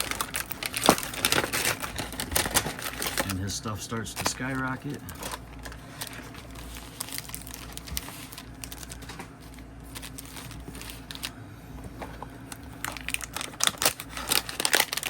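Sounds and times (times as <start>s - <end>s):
wrapper crinkling: 0.0s - 11.4s, 12.4s - 15.0s.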